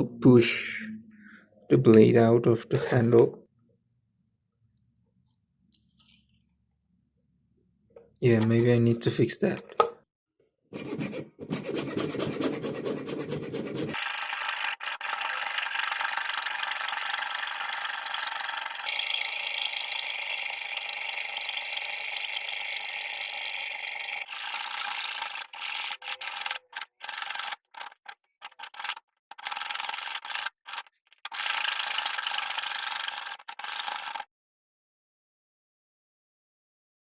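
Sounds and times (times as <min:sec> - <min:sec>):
file rasping on metal: 0:10.7 - 0:34.3.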